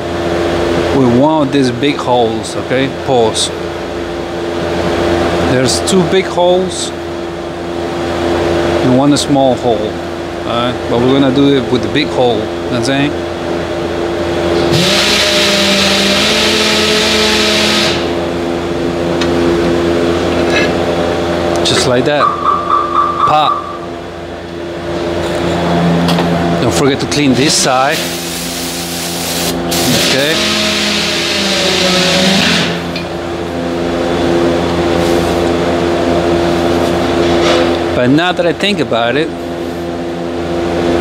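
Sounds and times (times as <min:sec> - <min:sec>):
mechanical hum: 0:00.0 - 0:41.0
loud hiss: 0:27.9 - 0:31.4.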